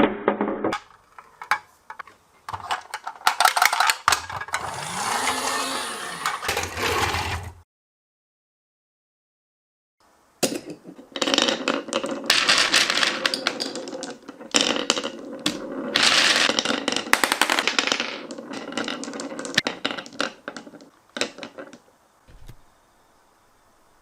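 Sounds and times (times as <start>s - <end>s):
marbles rolling rumble: 3.6s - 7.5s, 11.0s - 21.9s.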